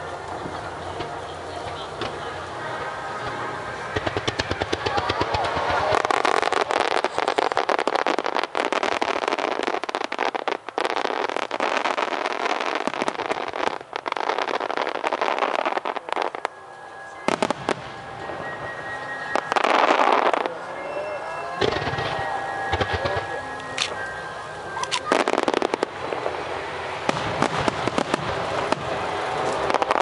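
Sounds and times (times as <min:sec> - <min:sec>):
fireworks crackling: 0:00.0 - 0:30.0
sharp firework cracks: 0:03.8 - 0:16.6, 0:24.7 - 0:30.0.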